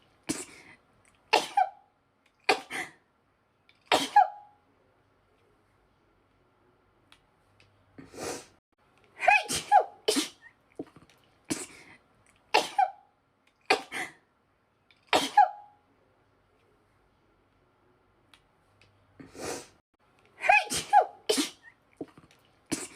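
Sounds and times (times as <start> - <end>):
woman sneezing: 1.3 - 1.7, 3.9 - 4.5, 9.2 - 10.5, 12.6 - 13.0, 15.1 - 15.6, 20.4 - 21.7.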